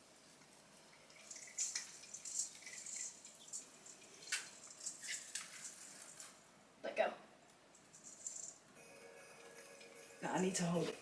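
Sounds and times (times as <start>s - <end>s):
artificial tree branches rustling: 0.0s - 6.6s.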